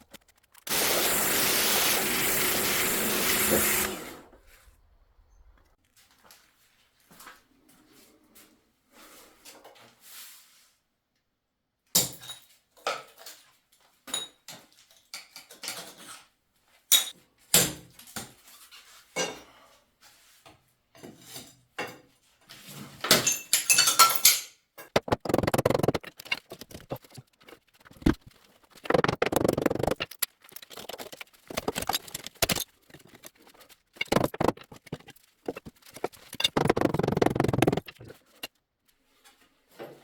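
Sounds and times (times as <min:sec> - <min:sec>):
metal objects clinking: 0:23.1 - 0:25.2, 0:29.0 - 0:38.5
scraping and rattling: 0:24.9 - 0:38.5.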